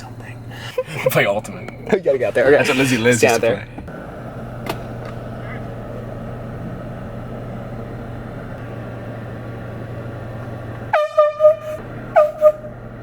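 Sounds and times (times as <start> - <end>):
air horn blasts: 10.9 - 12.8.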